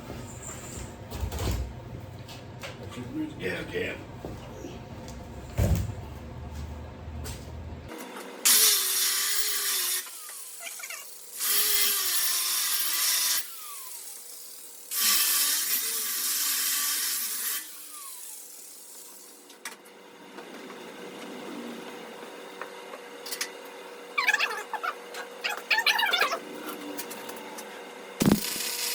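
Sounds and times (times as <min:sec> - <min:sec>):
grinder grinding on steel: 0:08.0 - 0:19.5, 0:24.1 - 0:28.9.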